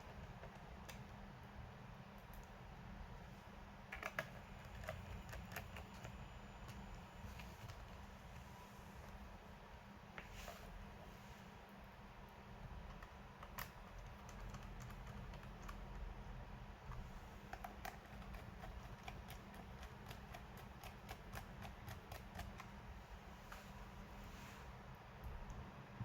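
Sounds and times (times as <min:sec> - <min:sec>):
low steady hum: 0:00.0 - 0:26.0
laptop keyboard typing: 0:03.9 - 0:08.2, 0:12.7 - 0:23.7.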